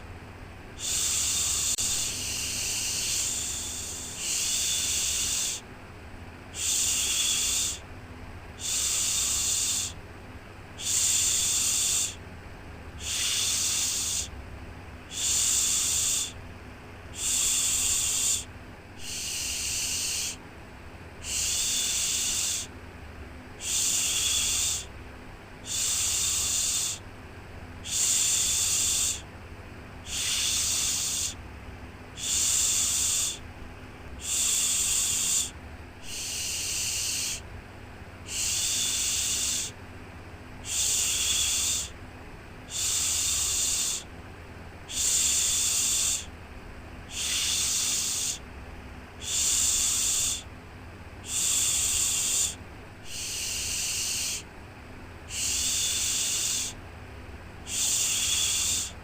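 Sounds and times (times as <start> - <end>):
faint low hum: 0.0 - 59.0
person shushing: 0.8 - 5.6, 6.5 - 7.8, 13.0 - 14.3, 17.1 - 20.4, 21.2 - 22.7, 23.6 - 24.9, 25.6 - 27.0, 27.8 - 29.3, 30.0 - 31.4, 32.2 - 33.4, 34.2 - 37.4, 38.3 - 39.8, 40.6 - 42.0, 42.7 - 44.1, 44.9 - 46.3, 47.1 - 48.4, 49.2 - 50.5, 51.2 - 54.5, 55.3 - 56.8, 57.7 - 59.0.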